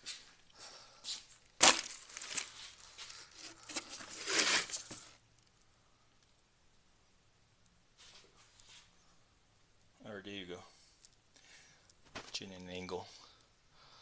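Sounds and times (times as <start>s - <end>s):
scraping and rustling: 1.6s - 5.2s.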